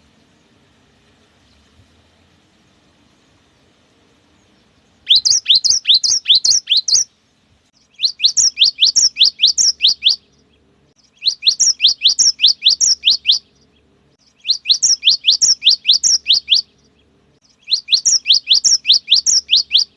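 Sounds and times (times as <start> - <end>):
bird singing fast high notes: 5.1 - 7.1, 7.9 - 10.2, 11.1 - 13.5, 14.4 - 16.7, 17.6 - 19.9.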